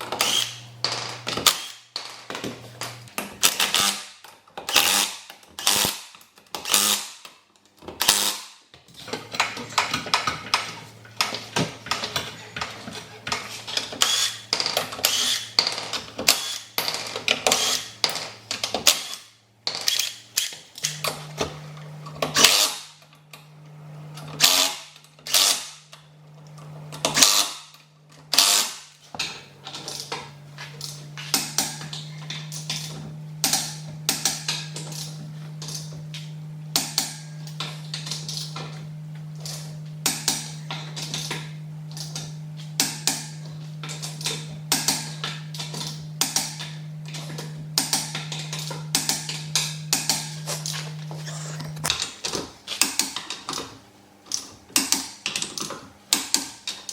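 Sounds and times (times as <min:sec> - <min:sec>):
low hum: 0:29.4 - 0:52.2
impact wrench rattling: 0:39.4 - 0:53.3.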